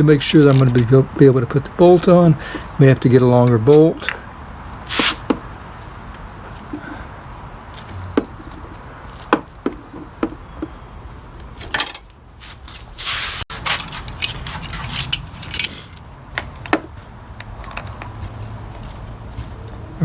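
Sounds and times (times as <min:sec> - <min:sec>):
metal scraping: 0:11.8 - 0:16.1
metal tools clinking: 0:13.5 - 0:16.1.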